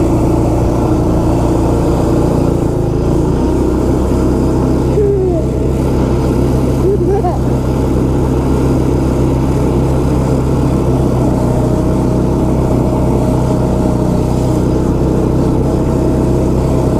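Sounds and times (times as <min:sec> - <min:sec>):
snowmobile engine running: 0:00.0 - 0:16.9.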